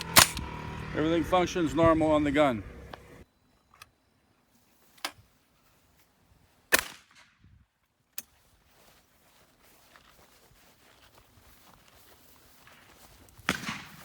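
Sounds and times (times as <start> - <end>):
airsoft rifle firing cracks: 0.0 - 0.6, 6.7 - 7.3, 13.4 - 14.0.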